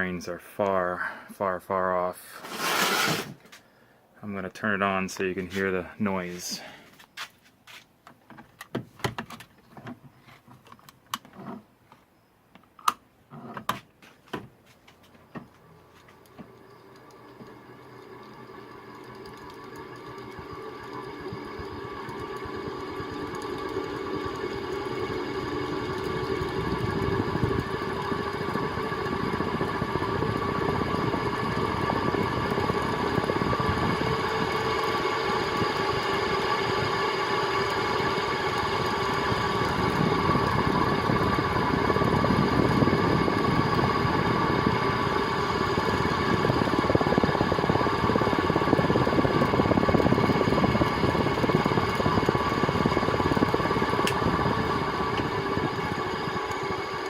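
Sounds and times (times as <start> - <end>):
fan motor hum: 2.3 - 3.7, 13.5 - 57.0.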